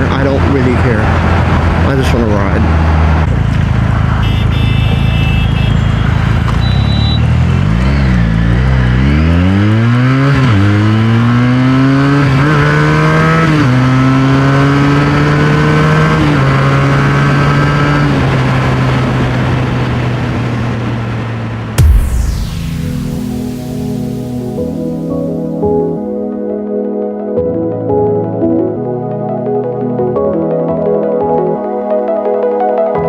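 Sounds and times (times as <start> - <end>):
motorcycle engine accelerating: 2.6 - 26.0
rush of noise: 21.7 - 26.0.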